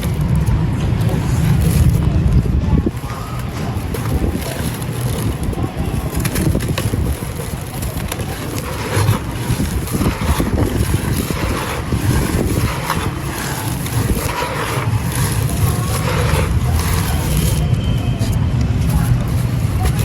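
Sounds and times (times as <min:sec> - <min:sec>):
sand clumps crumbling: 0:00.0 - 0:17.8
wind rumble on microphone: 0:00.0 - 0:20.0.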